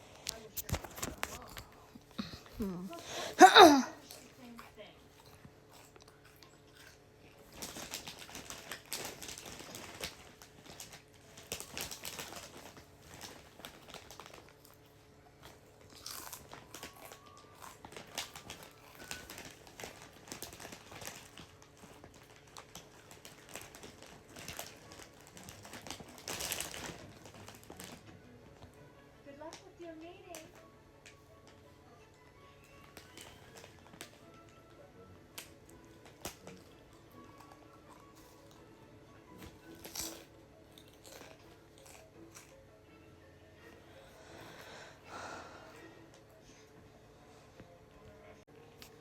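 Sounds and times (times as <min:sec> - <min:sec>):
crinkling and rustling: 0:00.0 - 0:03.3, 0:07.4 - 0:28.7, 0:32.7 - 0:34.6.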